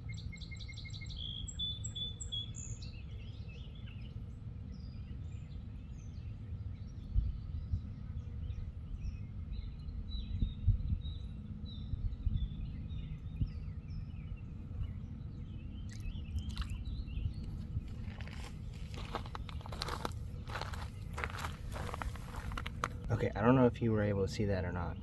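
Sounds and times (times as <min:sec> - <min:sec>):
small birds chirping: 0:00.0 - 0:25.0
steady low rumble: 0:06.4 - 0:25.0
sharp crackles or rustles: 0:17.9 - 0:23.1.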